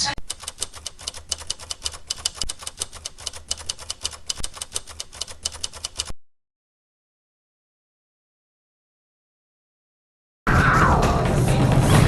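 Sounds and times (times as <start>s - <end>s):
typewriter key clicking: 0.2s - 6.1s.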